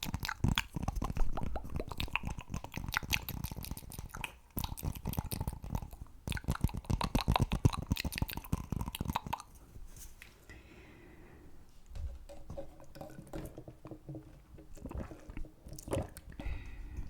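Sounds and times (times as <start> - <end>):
mouth clicks and smacks: 0.0 - 9.6, 14.7 - 17.0.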